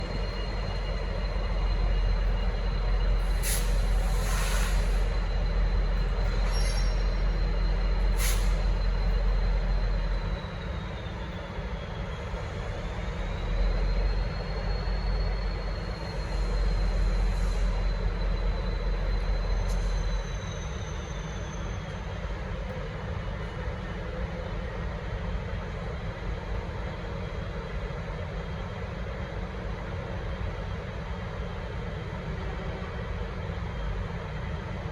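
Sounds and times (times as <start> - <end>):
diesel locomotive rumble: 0.0 - 34.9
thin high squeal: 6.3 - 7.4.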